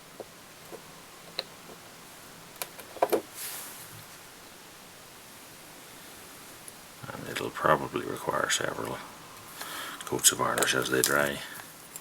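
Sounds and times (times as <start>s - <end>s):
soft rustle: 3.2s - 4.4s.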